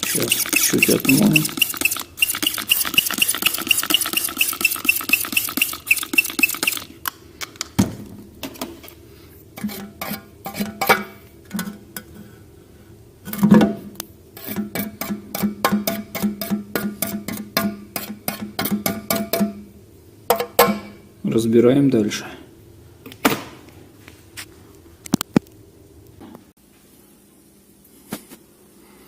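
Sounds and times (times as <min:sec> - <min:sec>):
scrubbing strokes: 0:00.0 - 0:06.9.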